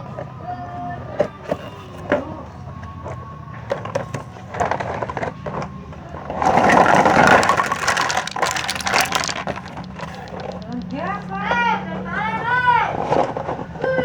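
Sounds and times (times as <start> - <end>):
plastic packaging crinkling: 6.4 - 11.3
toy parts clicking: 6.5 - 11.5.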